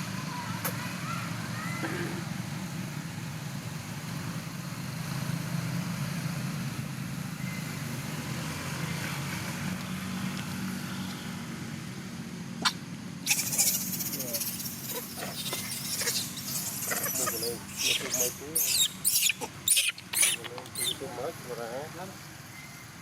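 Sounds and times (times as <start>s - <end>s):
engine idling: 9.7s - 23.0s.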